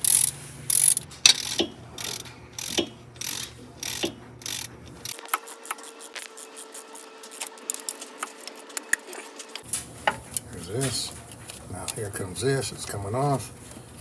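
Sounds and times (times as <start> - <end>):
socket ratchet clicking: 0.0 - 9.1
sharp metallic clicks: 0.0 - 9.6.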